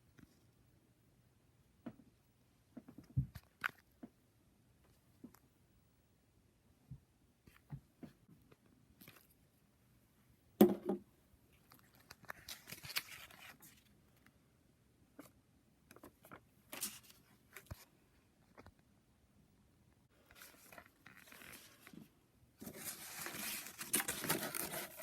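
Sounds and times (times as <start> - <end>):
sharp knock on plastic: 10.6 - 11.0
plastic pieces rustling and scraping: 22.6 - 25.0.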